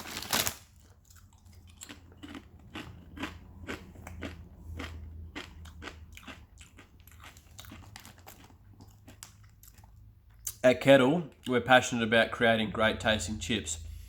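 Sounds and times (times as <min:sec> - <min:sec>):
person chewing crisps: 0:00.0 - 0:10.6.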